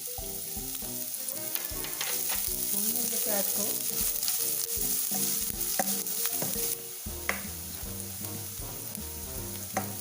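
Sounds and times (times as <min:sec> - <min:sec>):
background music: 0:00.0 - 0:10.0
onions sizzling in hot oil: 0:00.0 - 0:10.0.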